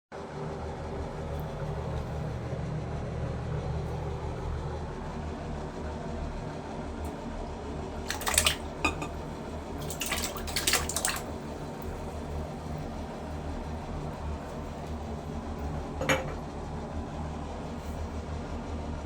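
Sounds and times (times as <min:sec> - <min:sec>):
steady low hum: 0:00.2 - 0:19.0
toilet flushing: 0:05.6 - 0:17.0
water splashing: 0:08.1 - 0:09.2, 0:09.8 - 0:12.8.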